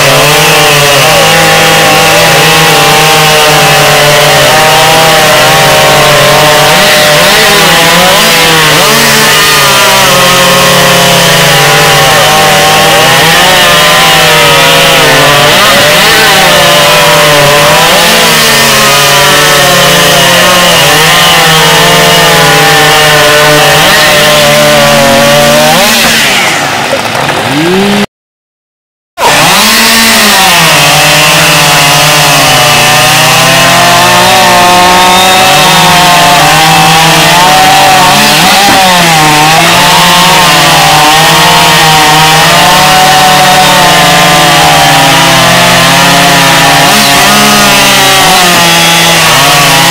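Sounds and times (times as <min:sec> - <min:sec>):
chainsaw running at high revs: 0:00.0 - 0:28.1, 0:29.2 - 0:49.9.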